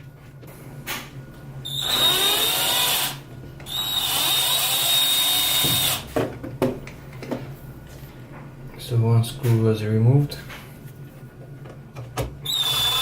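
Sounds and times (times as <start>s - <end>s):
cordless drill whining: 1.7s - 6.0s, 12.4s - 13.0s.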